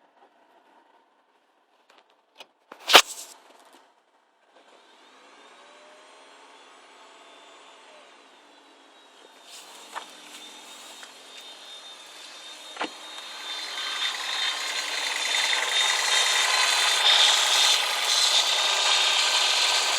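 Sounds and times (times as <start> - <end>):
sharp click: 2.7 - 3.4
steady whining tones: 9.0 - 19.9
rasping grinding car noise: 9.5 - 19.9.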